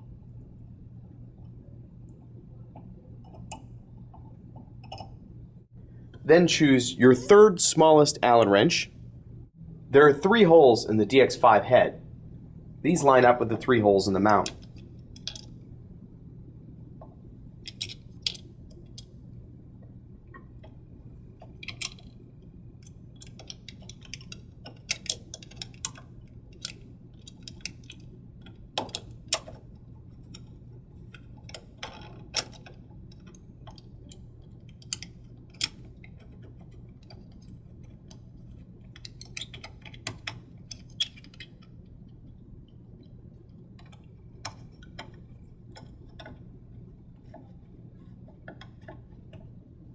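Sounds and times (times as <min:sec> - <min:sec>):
small metal clicks and taps: 0:31.1 - 0:38.2, 0:43.8 - 0:46.4.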